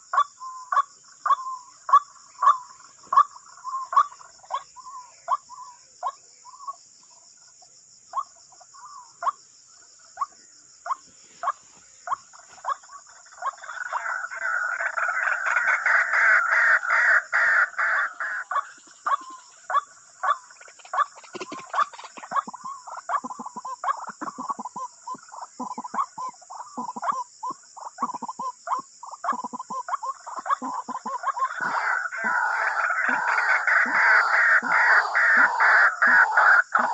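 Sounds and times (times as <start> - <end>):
waterhens calling: 0.0 - 6.8, 10.2 - 36.9
insects chirring: 0.0 - 36.9
waterhen calling: 29.3 - 36.9.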